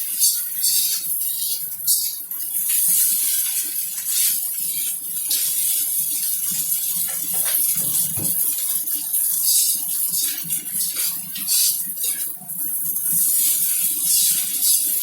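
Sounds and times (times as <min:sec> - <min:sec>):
rice sizzling in a pan: 0:00.0 - 0:15.0
spatula scraping a pan: 0:00.1 - 0:08.7.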